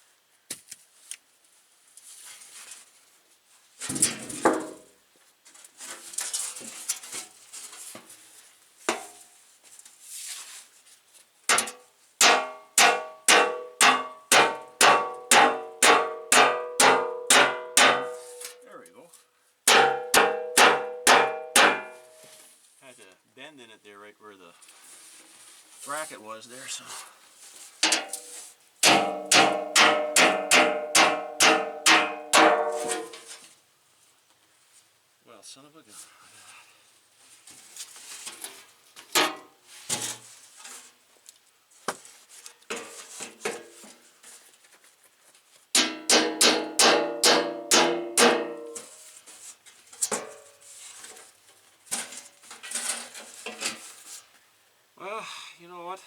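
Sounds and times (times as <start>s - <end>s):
sledgehammer striking metal: 11.5s - 18.6s, 19.7s - 22.2s, 27.9s - 33.3s, 45.8s - 48.9s
metal scraping: 27.8s - 33.5s.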